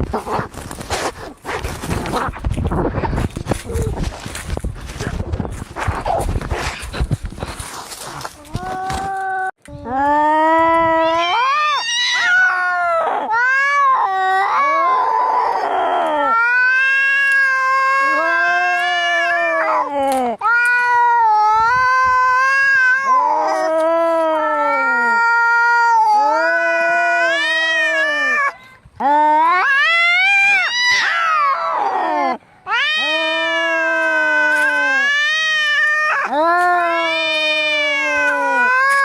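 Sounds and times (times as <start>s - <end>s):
cats yowling in a fight: 10.8s - 39.0s.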